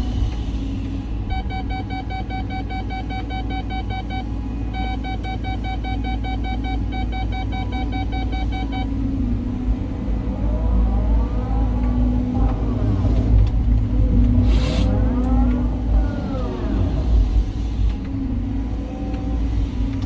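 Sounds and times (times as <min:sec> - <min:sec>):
rapid electronic beeping: 0:01.2 - 0:09.1
excavator diesel engine rumbling: 0:06.3 - 0:20.0.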